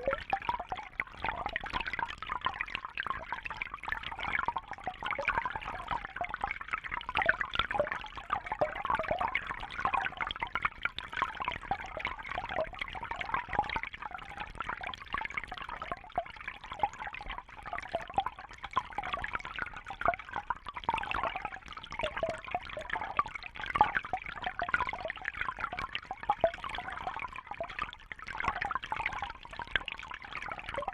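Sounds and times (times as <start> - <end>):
fountain water trickling and splashing: 0.0 - 30.9.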